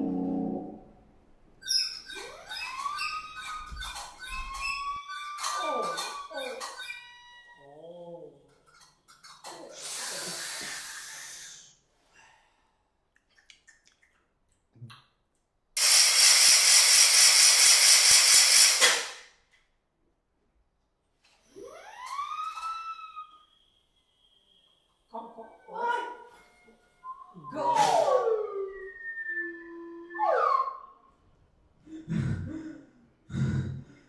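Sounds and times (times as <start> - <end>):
pulsing hiss: 9.8 - 11.8, 15.8 - 19.2
rising whistle-like tone: 21.8 - 25.7, 26.3 - 31.2.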